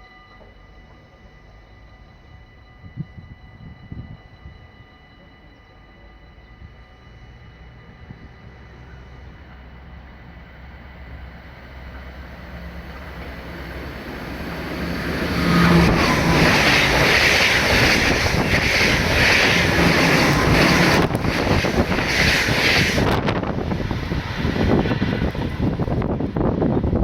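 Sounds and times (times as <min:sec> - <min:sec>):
electric train passing: 0:00.0 - 0:27.0
wheels rushing on rail: 0:06.5 - 0:27.0.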